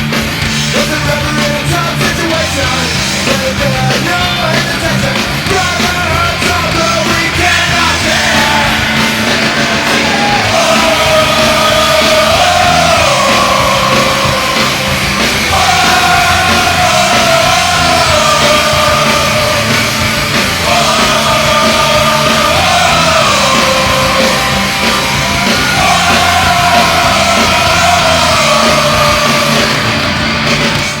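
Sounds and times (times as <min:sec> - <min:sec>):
hard rock song with shouted vocals: 0:00.0 - 0:31.0.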